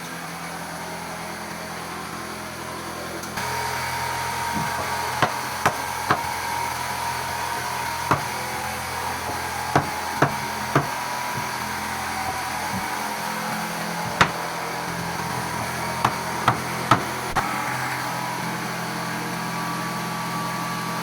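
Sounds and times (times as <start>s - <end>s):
mechanical hum with whine: 0.0s - 21.0s
nails hammered into wood: 4.6s - 6.4s, 8.1s - 8.5s, 9.2s - 11.7s, 12.7s - 13.0s, 14.1s - 17.4s.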